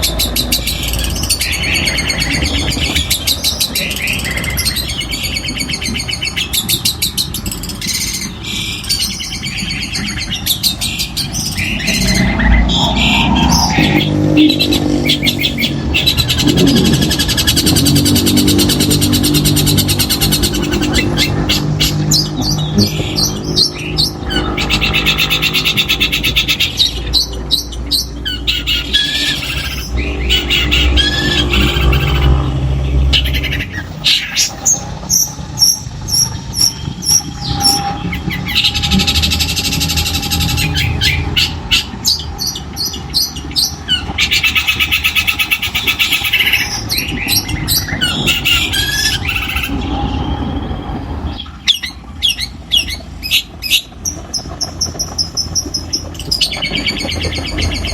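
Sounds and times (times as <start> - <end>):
bird singing rattling trills: 0.0 - 57.9
low rumble: 10.3 - 57.9.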